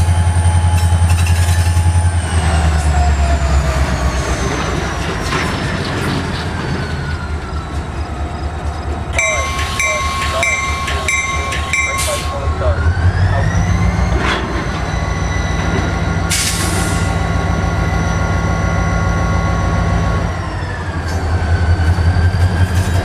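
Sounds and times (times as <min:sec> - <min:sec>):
diesel engine winding down: 0:00.0 - 0:23.0
repeated ringing signal: 0:09.2 - 0:12.8
steady tone: 0:09.2 - 0:14.0.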